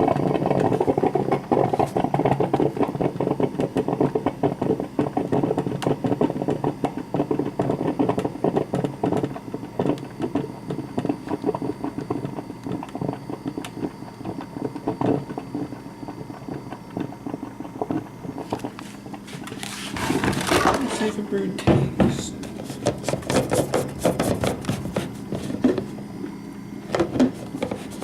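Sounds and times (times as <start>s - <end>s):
coffee maker gurgling and sputtering: 0.0s - 28.0s
faint steady hum: 0.0s - 28.0s.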